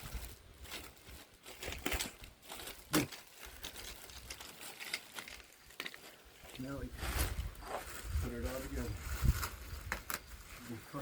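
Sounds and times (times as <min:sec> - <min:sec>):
packaging crinkling: 0:01.4 - 0:06.1.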